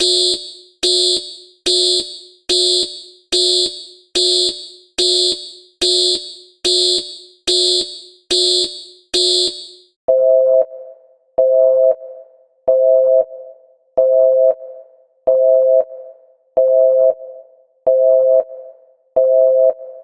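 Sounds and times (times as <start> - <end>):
shrill electronic alarm beeps: 0.0 - 10.7.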